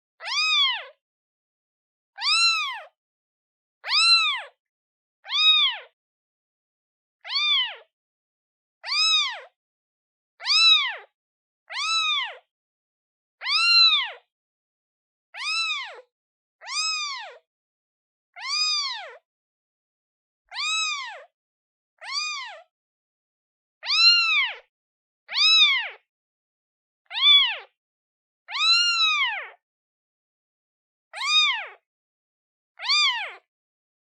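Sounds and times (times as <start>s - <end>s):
kitten meowing: 0.2s - 0.9s, 2.2s - 3.0s, 3.8s - 4.6s, 5.2s - 6.0s, 7.2s - 7.9s, 8.8s - 9.5s, 10.4s - 11.1s, 11.7s - 12.5s, 13.4s - 14.2s, 15.4s - 17.4s, 18.4s - 19.2s, 20.5s - 21.3s, 22.0s - 22.6s, 23.8s - 24.7s, 25.3s - 26.0s, 27.1s - 27.7s, 28.5s - 29.6s, 31.2s - 31.8s, 32.8s - 33.5s.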